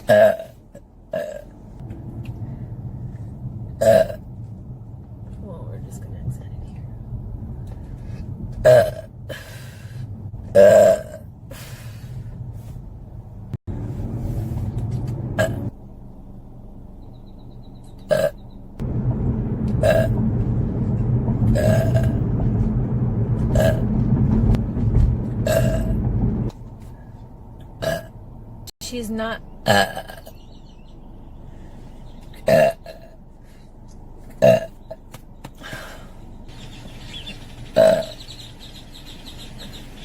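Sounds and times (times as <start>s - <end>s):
woman burping: 0.0s - 1.5s, 3.8s - 4.2s, 10.6s - 11.2s, 18.1s - 18.4s, 27.8s - 28.1s, 29.6s - 30.3s, 32.4s - 33.1s, 34.4s - 34.9s
low steady rumble: 0.0s - 40.0s.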